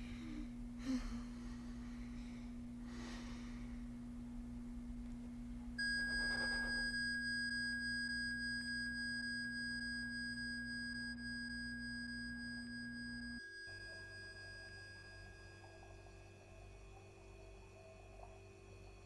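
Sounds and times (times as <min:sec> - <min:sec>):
low steady hum: 0:00.0 - 0:19.0
high bell-like tone ringing: 0:05.8 - 0:16.9.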